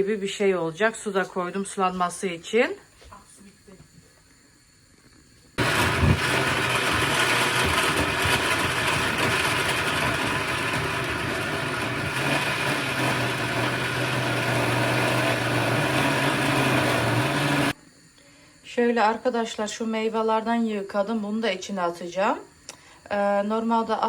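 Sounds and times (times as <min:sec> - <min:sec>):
blender running: 0:05.6 - 0:17.8.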